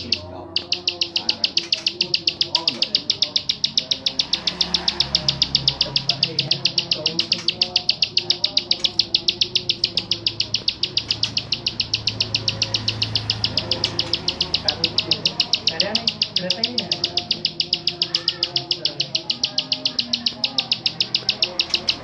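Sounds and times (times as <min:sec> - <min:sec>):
bird singing rapid high notes: 0:00.0 - 0:22.0.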